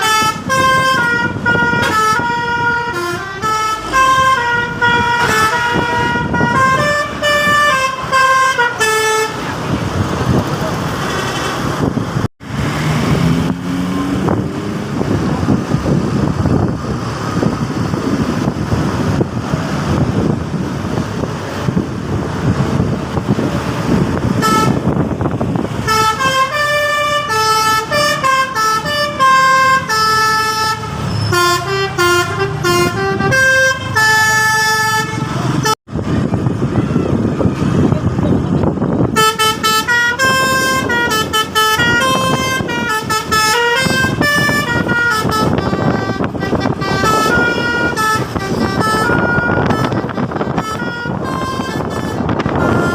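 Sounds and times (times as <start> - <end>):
multi-tone bus air horn tune: 0.0 - 9.7, 24.2 - 35.8, 39.0 - 52.9
bus engine running: 0.0 - 52.9.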